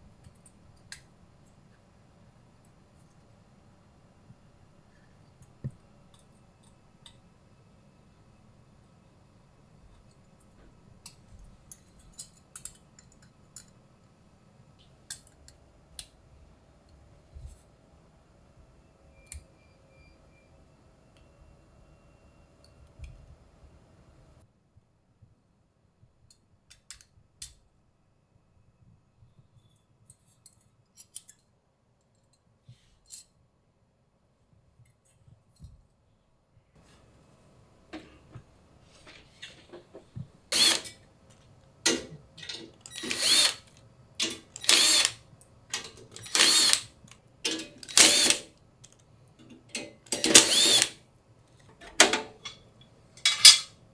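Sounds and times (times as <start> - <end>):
hardware clicks and knocks: 37.9 - 41.0, 41.9 - 45.0, 51.7 - 53.7
small parts clicking: 40.5 - 41.0, 41.9 - 51.0.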